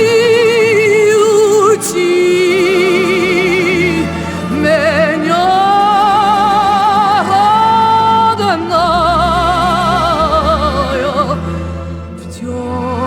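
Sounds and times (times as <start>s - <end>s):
woman singing folk song: 0.0s - 11.5s, 12.2s - 13.0s
low musical accompaniment: 0.0s - 13.0s.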